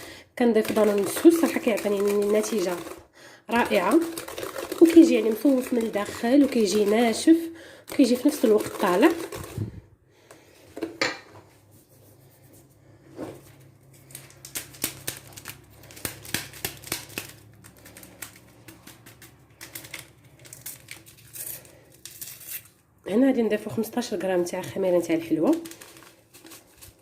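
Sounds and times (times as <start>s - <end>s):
utensil clicking and scraping bowl: 0.5s - 9.7s, 25.5s - 27.0s.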